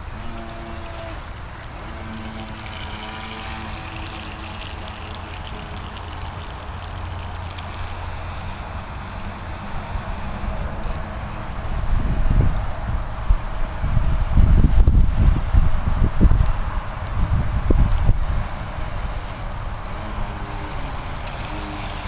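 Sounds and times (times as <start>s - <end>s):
motorboat motor: 0.0s - 12.2s, 16.4s - 22.0s
wind rumble on microphone: 0.0s - 22.0s
water splashing: 0.3s - 8.2s.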